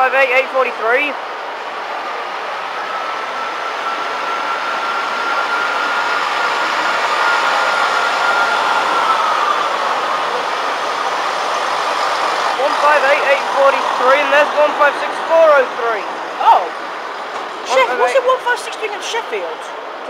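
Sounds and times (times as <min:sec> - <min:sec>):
train rail and engine noise: 0:00.0 - 0:20.0
thin high whine: 0:01.3 - 0:16.7.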